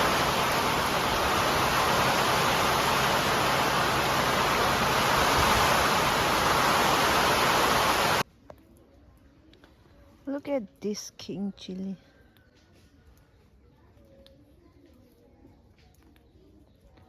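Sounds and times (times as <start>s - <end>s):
heavy rain pouring: 0.0s - 8.2s.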